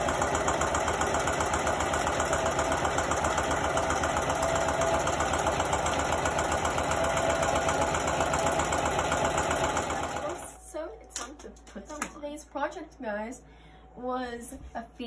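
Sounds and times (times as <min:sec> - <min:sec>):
sewing machine stitching: 0:00.0 - 0:10.6.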